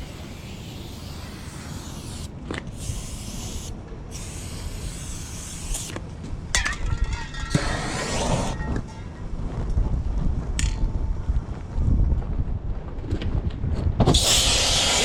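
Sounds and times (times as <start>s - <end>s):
aerosol can hissing: 0.2s - 5.9s, 14.1s - 15.0s.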